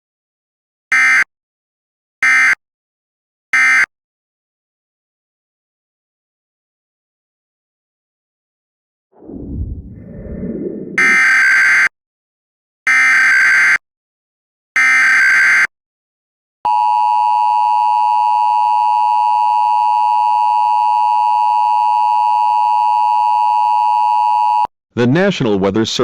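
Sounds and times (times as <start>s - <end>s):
low rumbling noise: 9.2s - 11.4s.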